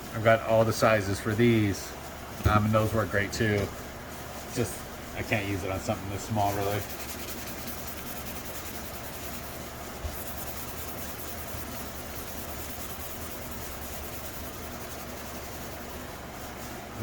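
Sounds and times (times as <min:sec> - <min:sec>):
sanding sponge rubbing: 0:05.3 - 0:17.0.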